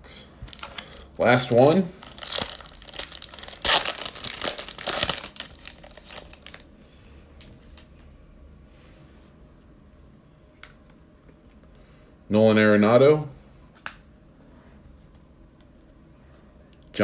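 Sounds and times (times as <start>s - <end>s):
cards being handled: 0.4s - 6.6s
foil wrapper tearing and crinkling: 0.5s - 6.6s.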